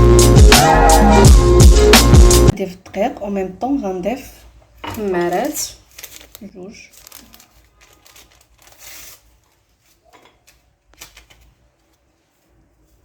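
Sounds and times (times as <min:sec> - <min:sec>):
paper sachets tearing: 0:05.0 - 0:11.5.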